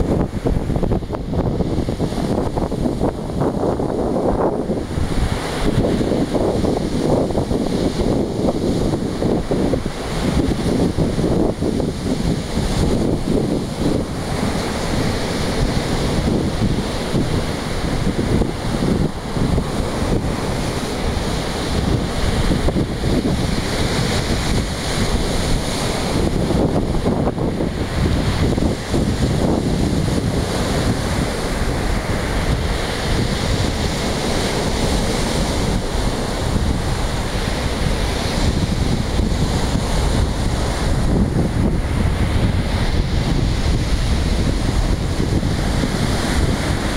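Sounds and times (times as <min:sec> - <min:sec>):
sea surf: 0:00.0 - 0:46.9
wind buffeting microphone: 0:00.0 - 0:46.9.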